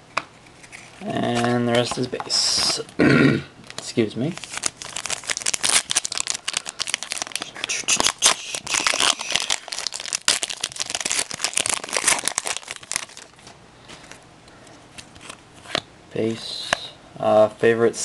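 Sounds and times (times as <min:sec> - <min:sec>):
wrapper torn and crinkled: 0:04.3 - 0:13.5.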